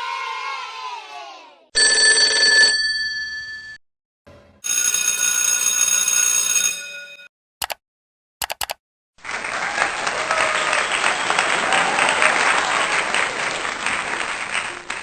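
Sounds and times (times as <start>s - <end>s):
electric bell ringing: 1.8s - 3.8s, 4.6s - 7.3s.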